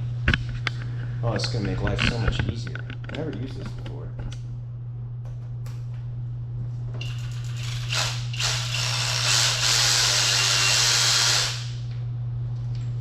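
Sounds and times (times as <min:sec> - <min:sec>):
electric ratchet whirring: 0:07.0 - 0:12.0.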